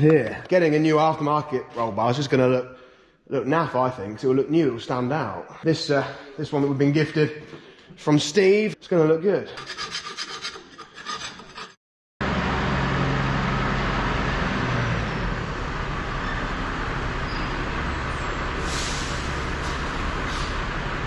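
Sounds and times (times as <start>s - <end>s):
tractor engine humming: 12.2s - 21.0s.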